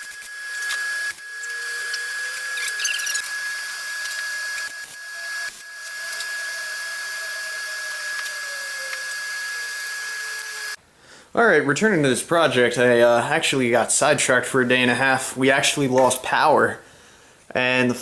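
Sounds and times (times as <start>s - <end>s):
electric power tool whining: 0.0s - 10.8s.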